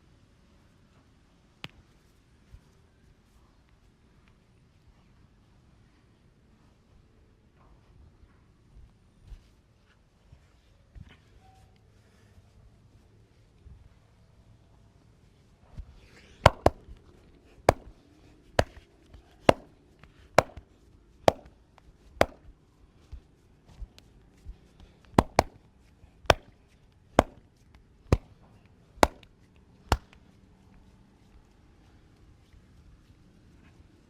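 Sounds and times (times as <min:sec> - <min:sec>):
hand strikes on body: 0:16.5 - 0:16.9, 0:17.7 - 0:17.9, 0:18.6 - 0:18.8, 0:19.5 - 0:19.7, 0:20.4 - 0:20.6, 0:21.3 - 0:21.5, 0:22.2 - 0:22.5, 0:25.2 - 0:25.6, 0:26.3 - 0:26.5, 0:27.2 - 0:27.4, 0:29.0 - 0:29.3, 0:29.9 - 0:30.2.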